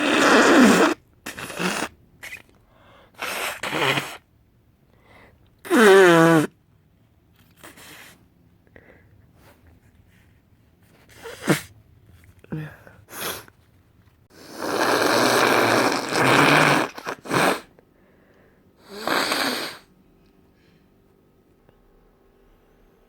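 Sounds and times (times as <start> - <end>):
person blowing nose: 0.0 - 4.3, 5.7 - 6.5, 7.6 - 8.2, 11.0 - 11.8, 13.1 - 13.5, 14.3 - 17.7, 18.8 - 19.9
person sniffling: 12.5 - 13.6.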